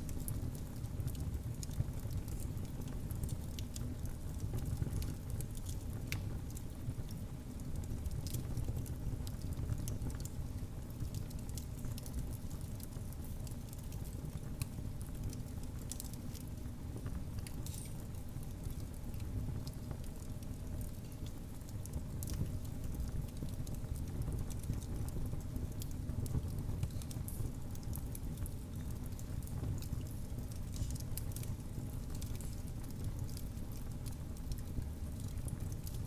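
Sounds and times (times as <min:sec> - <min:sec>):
fire crackles and pops: 0:00.0 - 0:36.0
fire rumbling in fireplace: 0:00.0 - 0:36.0.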